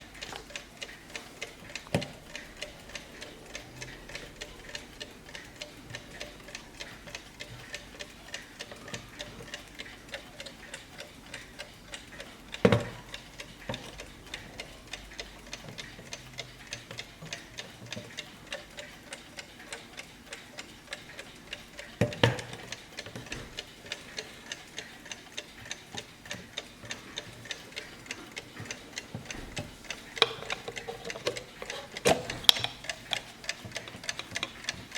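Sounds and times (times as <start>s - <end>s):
clock ticking: 0.0s - 34.9s.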